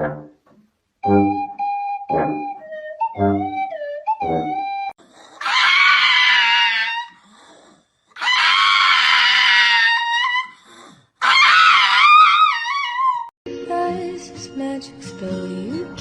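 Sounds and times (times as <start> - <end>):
high-pitched screaming cries: 5.4 - 7.2, 8.2 - 10.6, 11.2 - 13.3.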